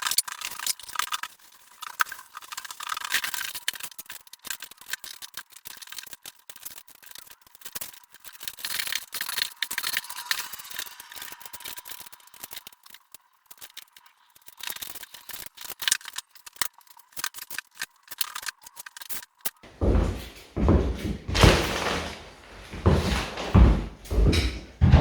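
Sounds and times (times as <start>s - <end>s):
low rumbling handling noise: 19.7s - 25.0s.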